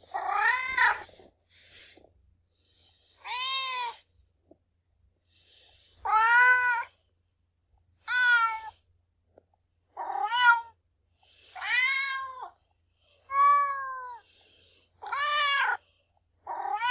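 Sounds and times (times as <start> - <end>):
cat meowing: 0.1 - 1.1, 3.2 - 4.0, 6.1 - 6.9, 8.1 - 8.8, 10.0 - 10.8, 11.6 - 12.5, 13.3 - 14.2, 16.5 - 16.9.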